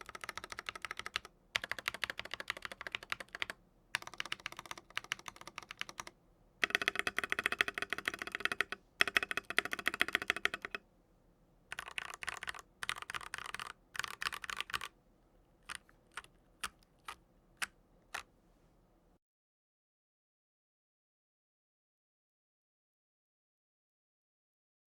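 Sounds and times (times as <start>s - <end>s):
mechanical keyboard typing: 0.0s - 10.8s, 11.7s - 14.9s, 15.6s - 18.3s.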